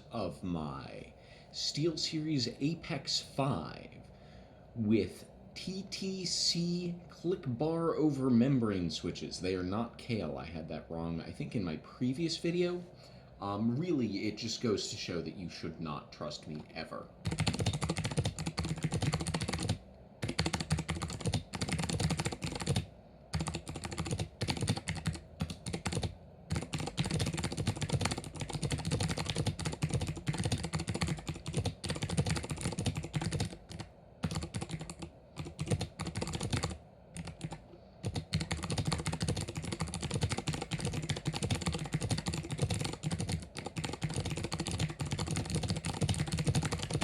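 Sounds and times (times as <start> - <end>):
keyboard clicking under typing: 17.2 - 47.0.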